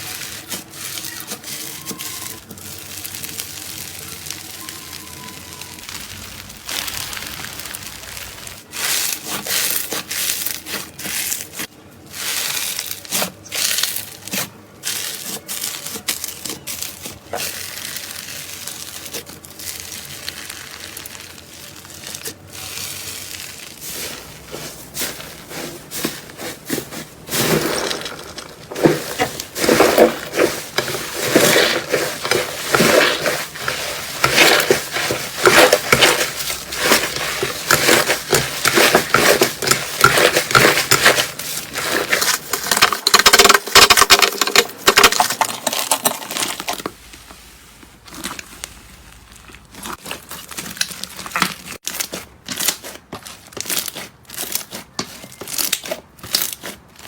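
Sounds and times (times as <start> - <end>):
slime crackling and popping: 0.0 - 46.9, 48.0 - 57.0.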